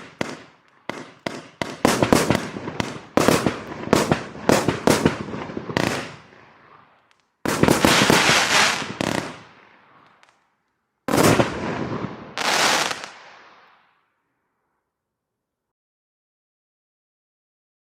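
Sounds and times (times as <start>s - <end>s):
firework bursts and crackling: 0.0s - 10.4s, 11.1s - 14.1s.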